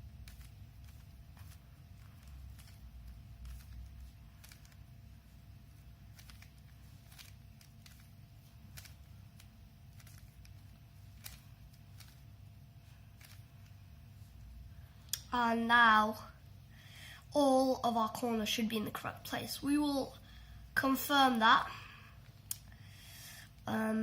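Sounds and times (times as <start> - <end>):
puzzle cube plastic clicks: 0.0 - 5.0, 5.6 - 12.3, 13.0 - 13.8.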